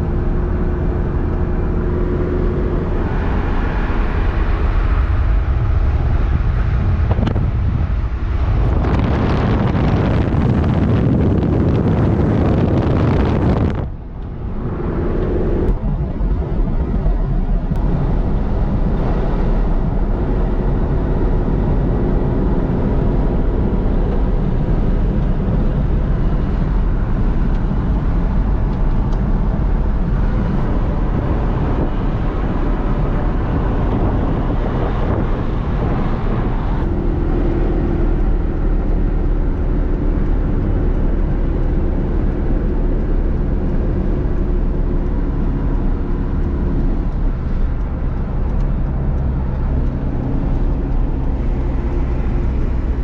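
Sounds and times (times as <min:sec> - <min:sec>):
car engine and road rumble: 0:00.0 - 0:53.0.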